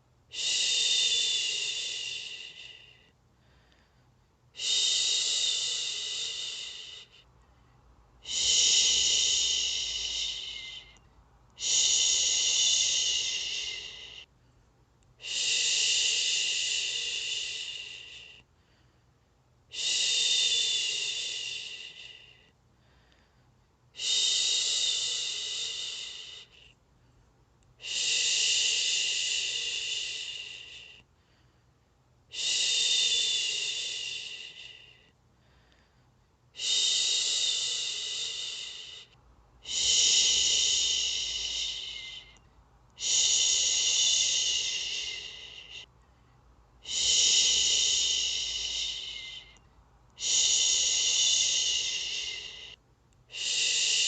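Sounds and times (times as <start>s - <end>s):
person shushing: 8.2s - 11.0s, 11.6s - 14.2s, 36.6s - 42.4s, 43.0s - 45.9s, 46.8s - 49.6s, 50.2s - 54.0s.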